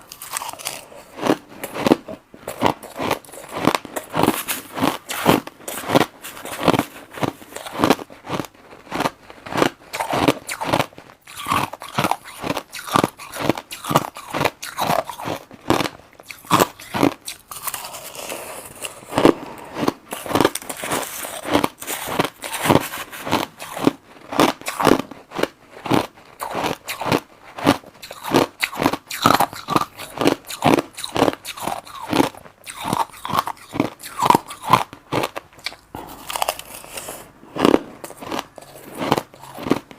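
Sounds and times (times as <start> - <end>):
crushed ice crunching: 0.1 - 27.2.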